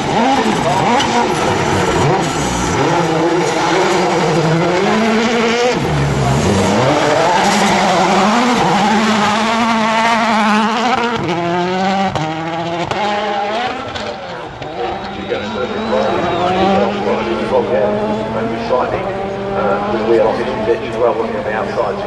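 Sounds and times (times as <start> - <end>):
rally car engine revving: 0.0 - 22.0.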